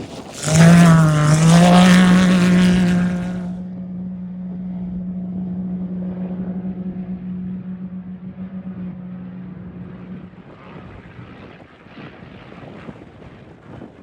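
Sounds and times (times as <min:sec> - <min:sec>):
off-road vehicle engine revving: 0:00.0 - 0:03.6.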